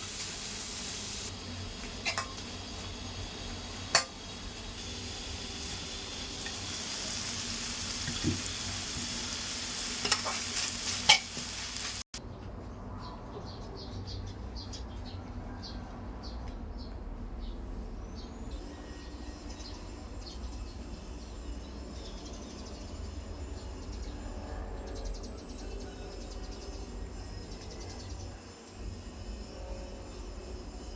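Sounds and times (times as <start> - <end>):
food sizzling in a pan: 0.0 - 12.1.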